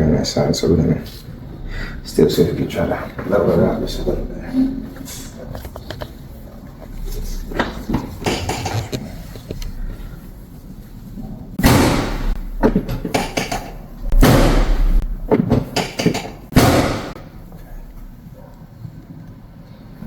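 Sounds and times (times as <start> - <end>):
drop-table sections thudding: 11.6 - 17.3.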